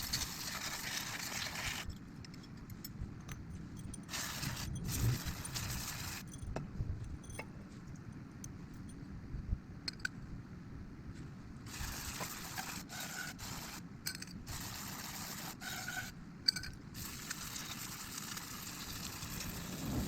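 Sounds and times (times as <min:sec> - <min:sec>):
metal parts scraping and rubbing: 0:00.0 - 0:06.4, 0:15.6 - 0:16.8.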